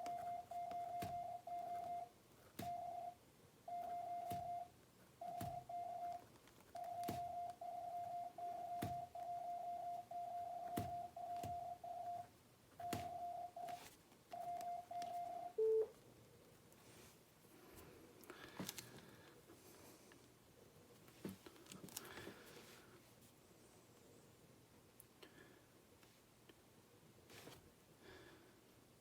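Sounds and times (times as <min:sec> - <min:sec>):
pencil tapping on paper: 0:00.0 - 0:03.1, 0:03.8 - 0:12.2, 0:12.8 - 0:13.8
morse code beeps: 0:00.0 - 0:06.2, 0:06.8 - 0:15.9
short low beep: 0:15.6 - 0:15.9.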